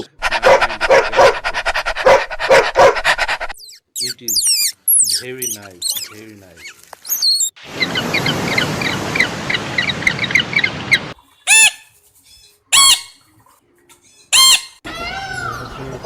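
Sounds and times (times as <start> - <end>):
bird squawking: 3.5 - 11.9, 12.8 - 13.2.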